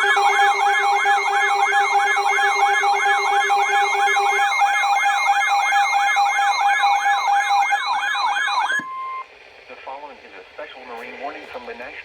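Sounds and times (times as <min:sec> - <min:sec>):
electronic siren yelping: 0:00.0 - 0:09.2.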